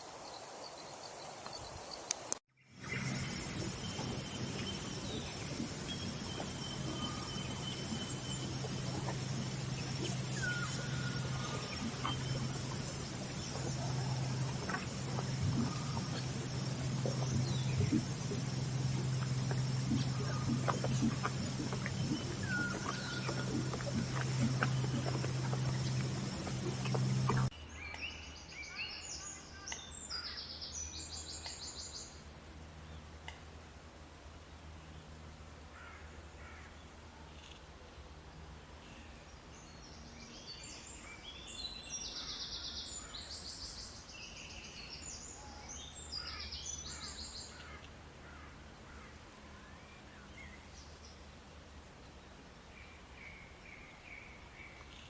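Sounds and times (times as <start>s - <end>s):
loud low hum: 2.6s - 27.8s
faint bird calls and whistles: 2.7s - 30.4s
low continuous hum: 2.7s - 55.0s.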